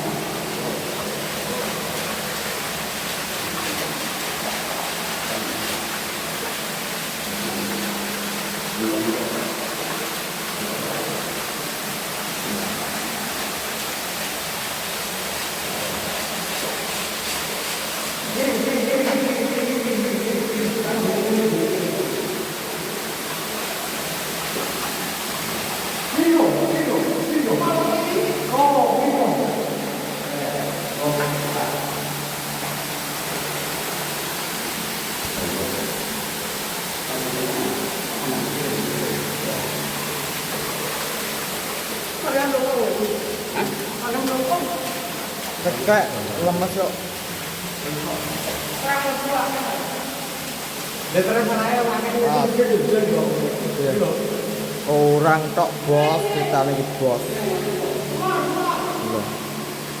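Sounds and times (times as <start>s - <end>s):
stream water rushing: 0.0s - 60.0s.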